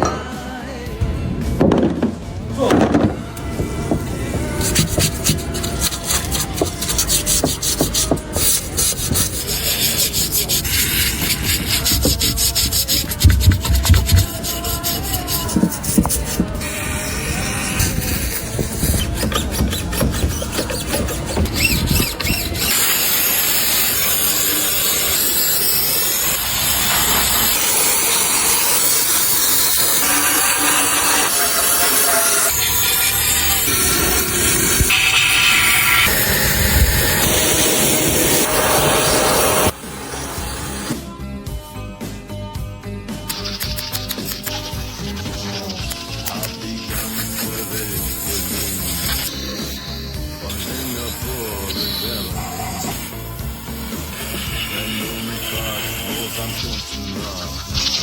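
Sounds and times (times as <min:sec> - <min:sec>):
rapid rubbing and scraping: 0:02.8 - 0:41.0, 0:43.3 - 0:58.0
loud steady hiss: 0:22.6 - 0:41.0, 0:46.6 - 0:58.0.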